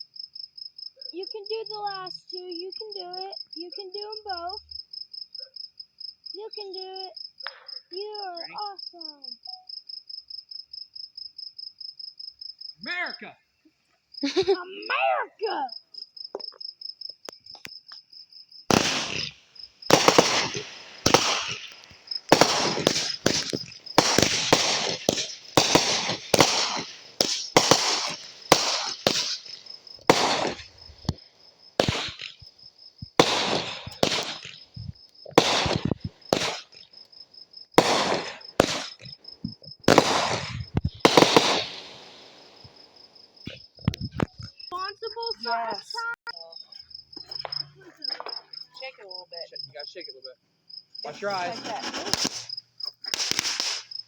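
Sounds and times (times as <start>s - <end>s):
crickets chirping: 0.0s - 54.0s
firework bangs with crackle: 18.7s - 37.0s, 37.7s - 44.5s, 51.4s - 54.0s.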